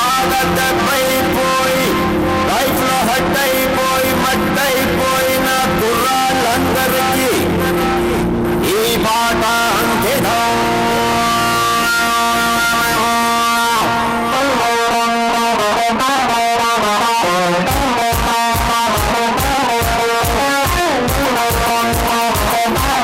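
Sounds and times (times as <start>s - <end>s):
guitar chords and riff: 0.0s - 23.0s
bass drum beat: 17.7s - 23.0s.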